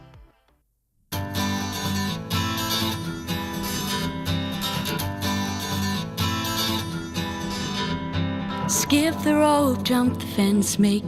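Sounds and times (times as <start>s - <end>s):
strummed acoustic guitar: 1.1s - 11.0s.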